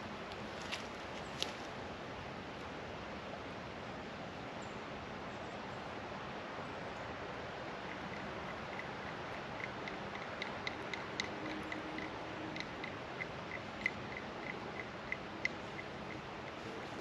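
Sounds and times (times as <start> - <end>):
creek water rushing: 5.9 - 17.0
sharp clicks: 7.8 - 16.6.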